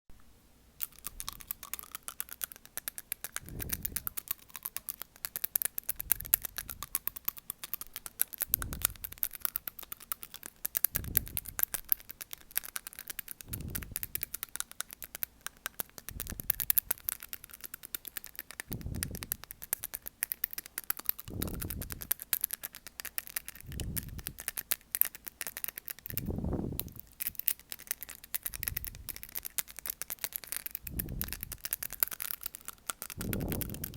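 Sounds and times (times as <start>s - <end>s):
fast microphone crackling: 3.2s - 4.9s, 5.8s - 9.4s, 10.9s - 12.0s, 13.4s - 14.4s, 16.0s - 17.2s, 18.6s - 20.0s, 21.1s - 22.2s, 23.6s - 24.4s, 26.1s - 27.4s, 28.4s - 29.3s, 30.8s - 32.2s, 33.1s - 33.9s
low whooshing rumble: 8.5s - 9.1s, 18.7s - 19.3s, 26.2s - 27.0s.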